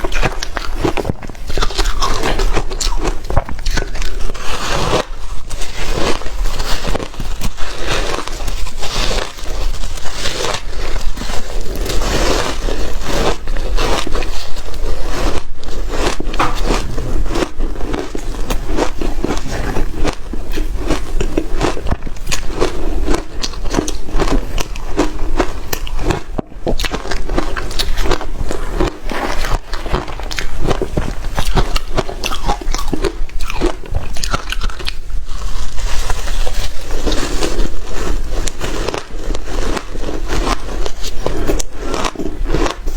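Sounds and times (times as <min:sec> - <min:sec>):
chewing hard ice: 0:00.0 - 0:42.9.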